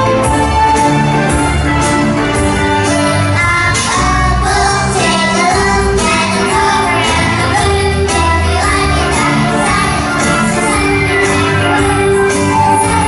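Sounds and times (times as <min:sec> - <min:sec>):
pop song with beat: 0:02.8 - 0:13.0
person singing: 0:02.9 - 0:13.0.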